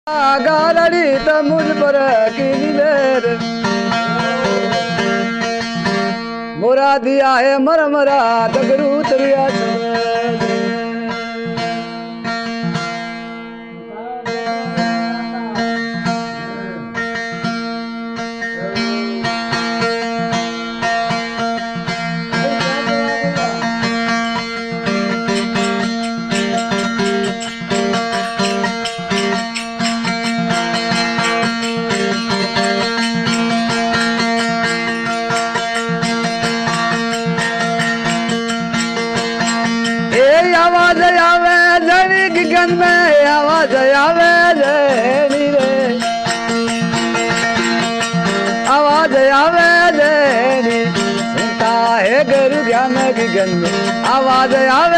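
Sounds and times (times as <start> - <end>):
plucked strings: 0.1 - 54.9
gliding melody line: 22.3 - 41.4.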